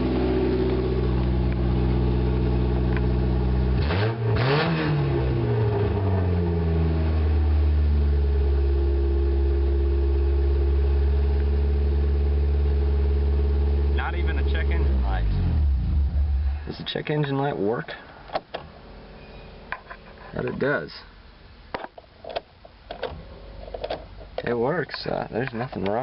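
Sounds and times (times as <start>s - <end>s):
car engine revving and idling: 0.0s - 16.7s.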